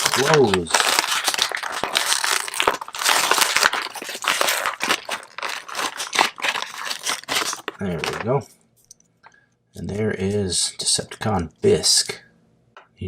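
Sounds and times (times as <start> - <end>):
toy packaging being torn open: 0.0 - 8.3.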